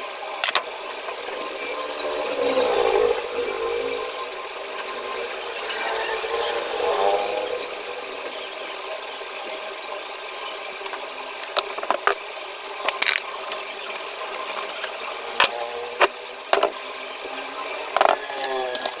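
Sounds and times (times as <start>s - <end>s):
metallic clicks and clinks: 18.0s - 19.0s.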